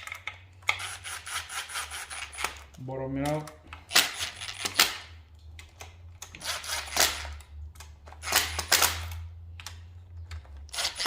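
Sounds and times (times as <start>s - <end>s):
impact wrench rattling bursts: 0.6s - 2.8s, 3.8s - 5.1s, 6.3s - 7.4s, 8.2s - 9.3s, 10.6s - 11.0s.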